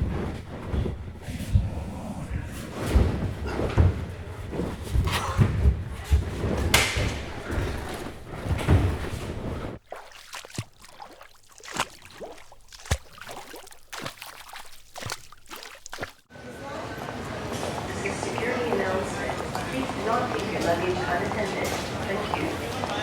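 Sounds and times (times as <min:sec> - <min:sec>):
heavy thudding footsteps: 0:00.0 - 0:16.3
sharp footsteps: 0:00.0 - 0:16.3
background noise: 0:00.0 - 0:23.0.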